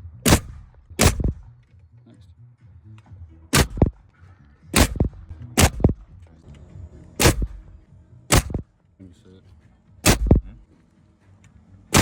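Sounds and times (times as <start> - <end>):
nail gun shots into wood: 0.2 - 1.5, 3.5 - 4.0, 4.8 - 6.0, 7.2 - 7.7, 8.3 - 8.7, 10.0 - 10.5.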